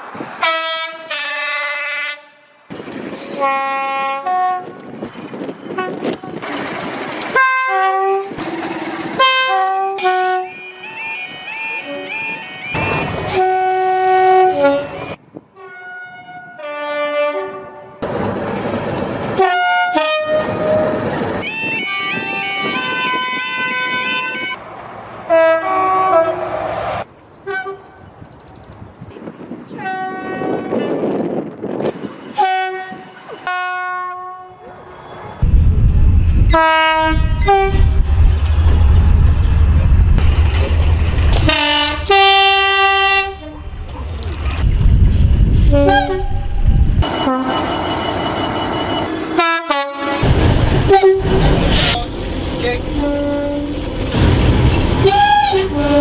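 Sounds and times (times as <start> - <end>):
moving train rumble: 0.0 - 56.0
train two-tone horn: 0.4 - 2.6, 3.2 - 4.8, 5.7 - 6.4, 7.3 - 8.4, 9.2 - 18.0, 19.4 - 24.6, 25.3 - 26.7, 27.4 - 28.0, 29.8 - 30.9, 32.3 - 34.7, 36.5 - 37.9, 41.4 - 43.7, 45.6 - 50.3, 50.9 - 52.0, 53.0 - 54.2, 55.0 - 56.0.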